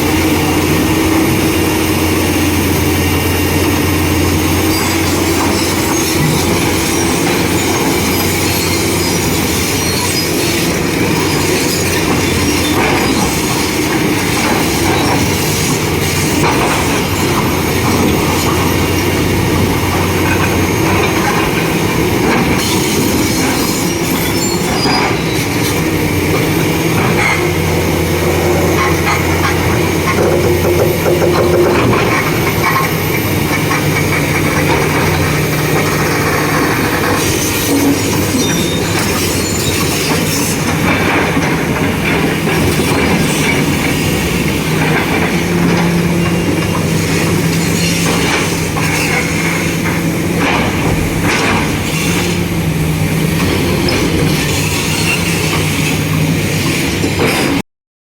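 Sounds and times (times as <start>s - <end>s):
excavator diesel engines working: 0.0s - 57.6s
metallic knocks and scraping: 28.2s - 39.2s.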